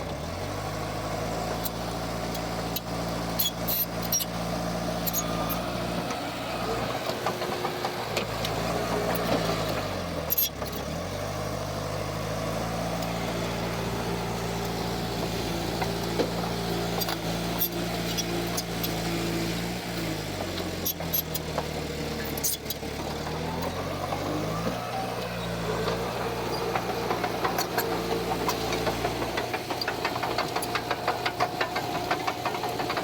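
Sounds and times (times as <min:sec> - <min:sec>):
heavy diesel engine running: 0:00.0 - 0:33.0
sharp knocks and clanks: 0:14.6 - 0:17.2, 0:25.7 - 0:33.0.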